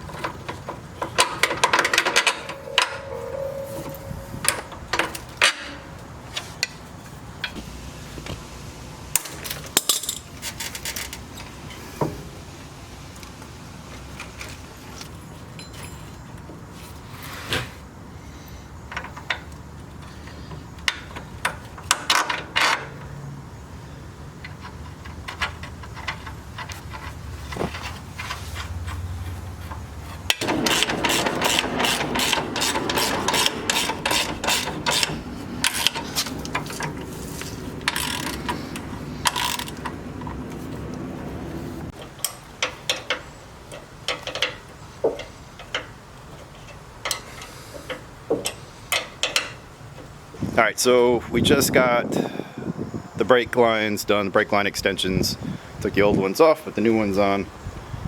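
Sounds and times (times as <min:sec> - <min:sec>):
ratchet wrench clicking: 0:39.2 - 0:39.8.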